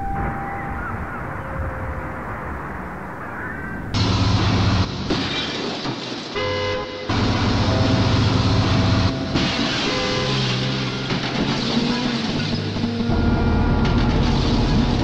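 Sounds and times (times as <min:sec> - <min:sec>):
horn-like tone: 0:00.0 - 0:01.7, 0:06.4 - 0:10.7
low buzzing drone: 0:00.0 - 0:03.2, 0:07.1 - 0:11.4, 0:12.5 - 0:15.0.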